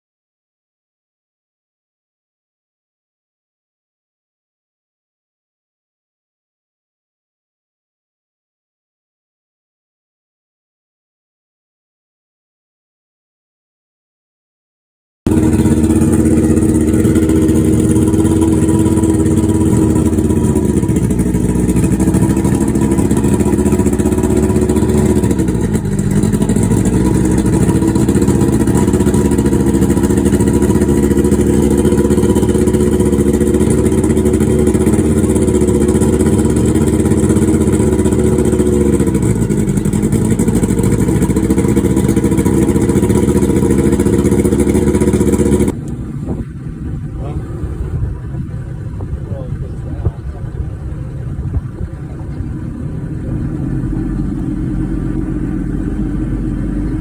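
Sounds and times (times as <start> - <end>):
motor running loudly: 15.3 - 57.0.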